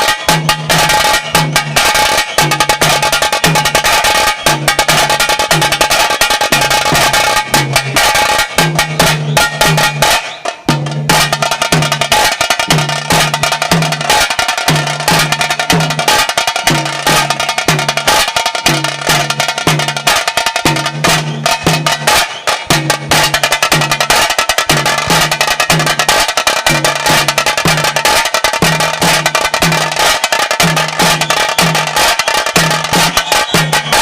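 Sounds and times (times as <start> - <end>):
drums beaten with thin sticks: 0.0 - 34.0.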